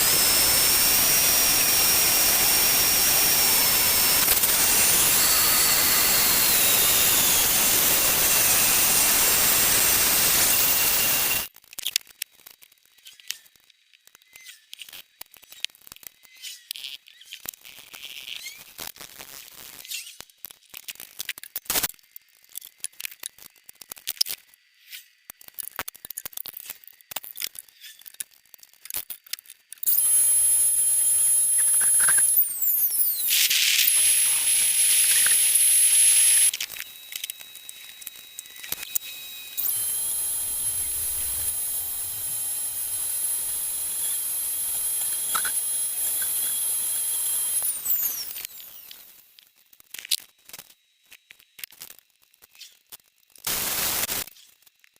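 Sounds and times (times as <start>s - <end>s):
power tool whirring with high whine: 0.0s - 11.5s, 29.8s - 54.6s
tools clicking and tapping: 31.6s - 34.1s, 34.9s - 35.6s, 44.7s - 50.3s.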